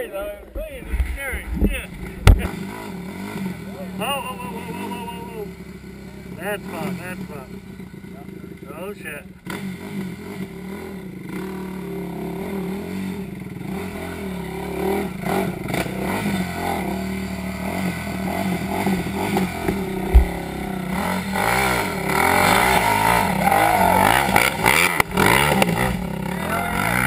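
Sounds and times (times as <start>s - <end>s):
off-road engines revving: 0.0s - 27.0s
sharp thump: 0.9s - 2.6s, 19.4s - 20.7s.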